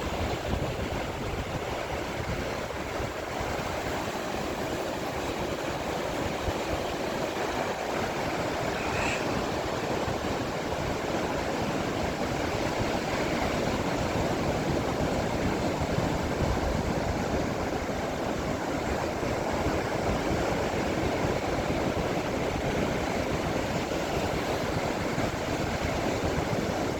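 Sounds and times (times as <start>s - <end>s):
ocean waves breaking: 1.0s - 20.9s.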